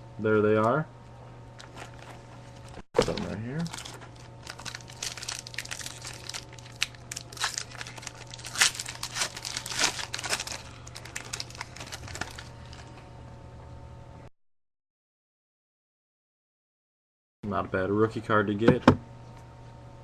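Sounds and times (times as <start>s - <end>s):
steady low hum: 0.0s - 14.3s, 17.4s - 20.0s
card pack wrappers crinkling and tearing: 1.6s - 13.0s.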